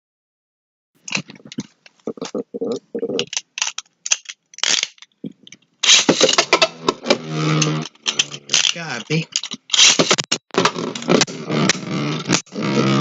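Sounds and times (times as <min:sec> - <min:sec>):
spinning tops clattering and scraping: 0:05.8 - 0:06.9, 0:07.5 - 0:11.1.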